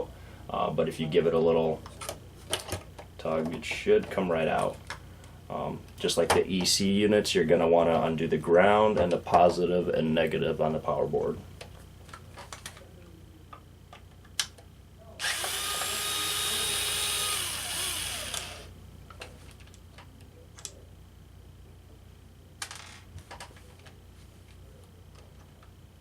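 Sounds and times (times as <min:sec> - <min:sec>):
small power drill running: 0:15.2 - 0:18.7.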